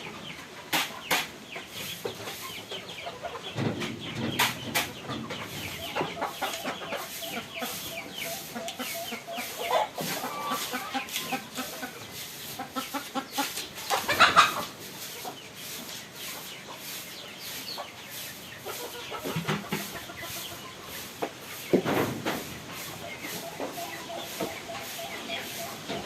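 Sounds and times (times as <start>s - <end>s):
chickens clucking: 0.0s - 26.0s
short scrapes and knocks: 3.6s - 8.2s.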